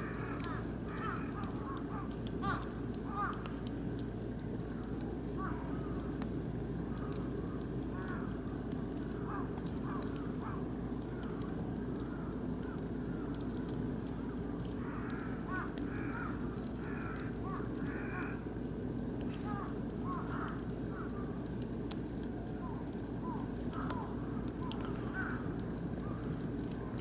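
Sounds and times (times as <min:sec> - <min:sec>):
birds calling: 0:00.0 - 0:03.5, 0:22.6 - 0:27.0
wood fire crackling and popping: 0:00.0 - 0:27.0.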